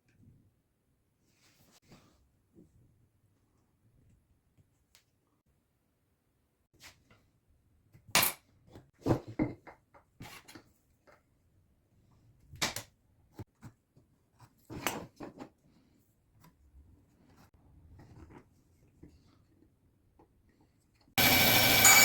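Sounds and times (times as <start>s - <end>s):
knocks and clatters on a workbench: 8.1s - 11.2s.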